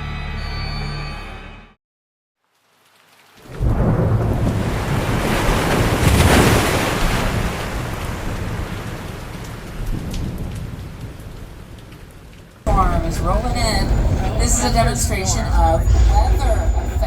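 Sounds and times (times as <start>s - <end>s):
rain and falling water: 2.4s - 17.0s
thunder rumbling: 3.5s - 11.9s, 12.7s - 17.0s.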